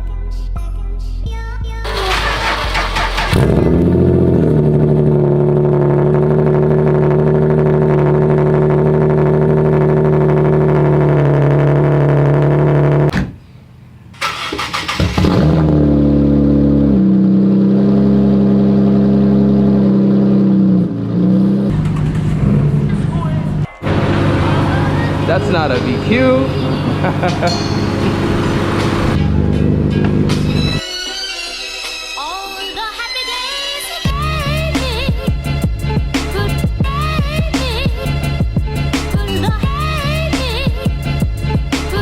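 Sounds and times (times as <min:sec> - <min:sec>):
car engine idling: 0:01.8 - 0:16.9, 0:17.8 - 0:30.8
engine cranking: 0:01.9 - 0:03.9, 0:14.2 - 0:15.7, 0:21.7 - 0:27.1.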